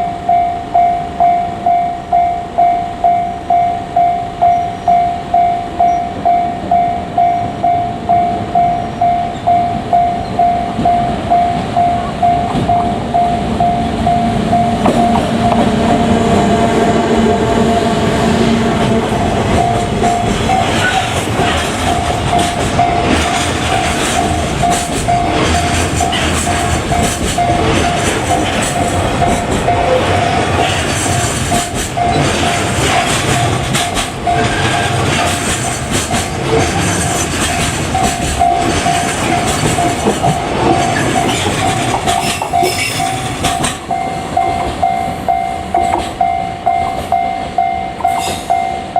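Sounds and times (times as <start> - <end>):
electric locomotive passing: 0.0 - 48.9
level-crossing warning bell: 0.0 - 48.9
wagon wheels clattering over rail joints: 18.9 - 46.2.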